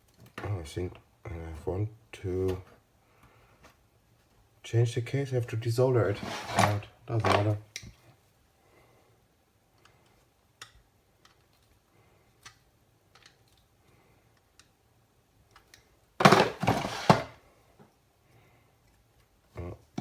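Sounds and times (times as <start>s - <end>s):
small plastic parts clicking: 9.7s - 14.8s, 15.4s - 16.0s.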